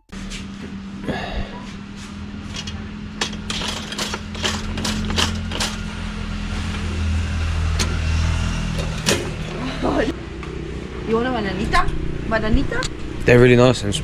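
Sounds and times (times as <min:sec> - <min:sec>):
vehicle engine humming: 0:01.8 - 0:10.4
sharp clicks and knocks: 0:02.6 - 0:06.0, 0:07.7 - 0:09.6.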